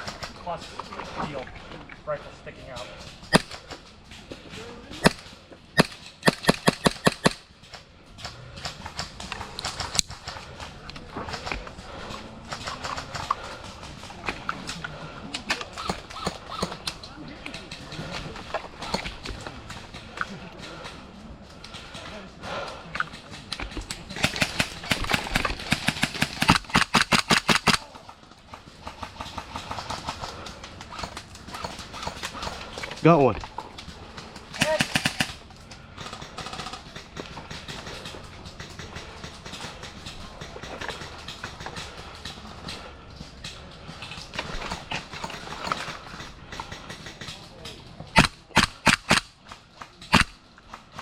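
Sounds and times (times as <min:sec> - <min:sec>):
airsoft guns firing: 0:02.8 - 0:03.9, 0:04.9 - 0:17.0, 0:21.8 - 0:28.0, 0:34.0 - 0:42.9, 0:44.1 - 0:51.0
airsoft gun shots: 0:05.8 - 0:07.4, 0:24.2 - 0:27.8, 0:48.2 - 0:49.3, 0:50.1 - 0:50.4.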